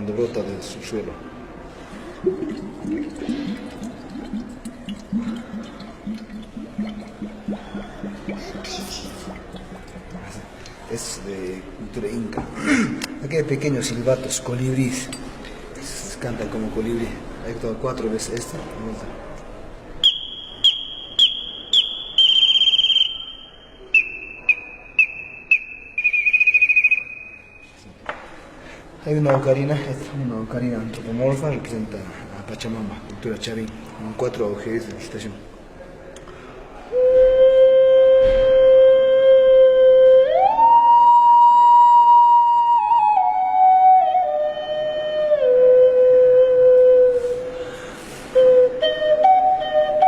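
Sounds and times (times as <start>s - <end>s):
water gurgling in a bottle: 1.9s - 10.9s
high whistle with chirps and trills: 20.0s - 27.8s, 37.0s - 50.0s.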